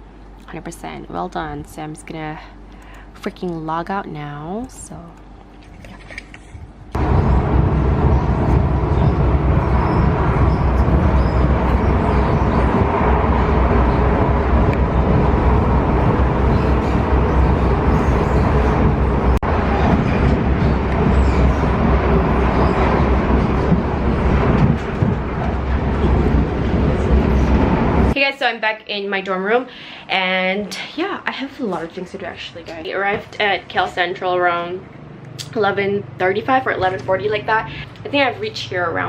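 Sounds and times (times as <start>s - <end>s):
train rumbling: 6.9s - 28.2s.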